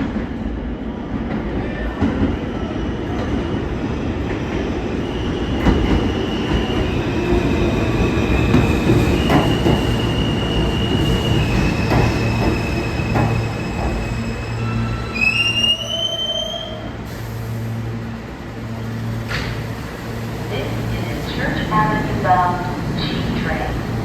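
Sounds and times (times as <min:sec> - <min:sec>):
subway train rumble: 0:00.0 - 0:24.0
high wheel squeal: 0:10.0 - 0:17.0.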